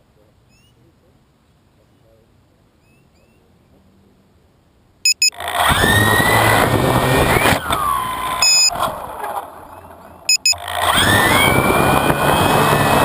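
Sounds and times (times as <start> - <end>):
faint bird chirps: 0.4 - 0.9, 2.8 - 3.8
short electronic beeps: 5.0 - 5.4, 8.4 - 8.8, 10.3 - 10.7
drone motors and propellers whining: 5.1 - 13.0.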